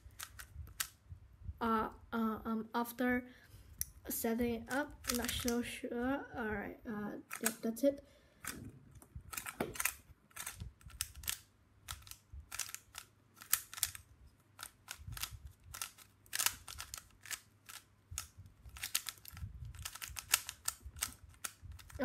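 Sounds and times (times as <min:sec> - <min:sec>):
puzzle cube layers clacking: 0:00.0 - 0:01.0, 0:04.7 - 0:05.6, 0:07.3 - 0:07.6, 0:09.3 - 0:22.0.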